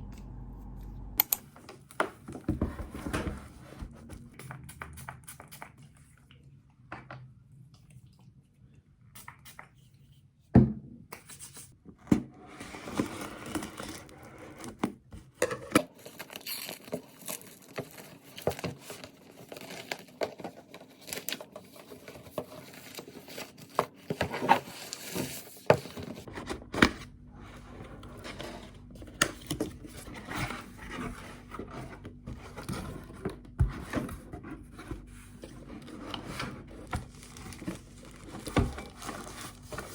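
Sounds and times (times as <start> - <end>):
packaging tearing and crinkling: 15.8 - 23.8, 36.9 - 39.9.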